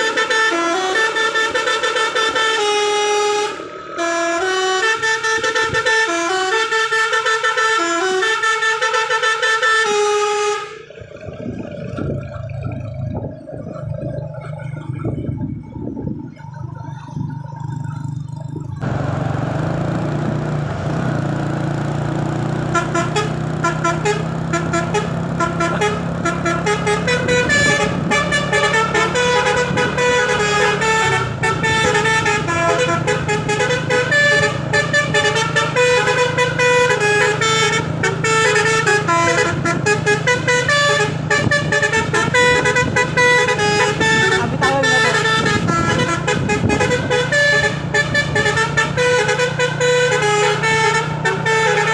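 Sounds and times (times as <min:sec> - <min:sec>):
musical horn melody: 0:00.0 - 0:11.1, 0:22.5 - 0:51.9.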